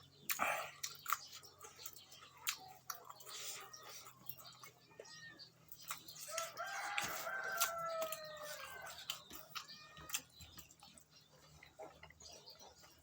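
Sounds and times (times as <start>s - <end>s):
chewing clicks: 0.0s - 13.0s
rooster crowing: 6.3s - 9.0s.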